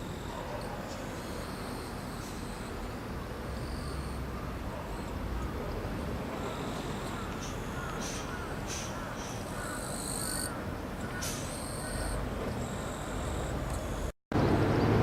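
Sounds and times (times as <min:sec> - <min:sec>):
high-pitched bird calls: 0:06.4 - 0:14.1
crows cawing: 0:07.1 - 0:12.2.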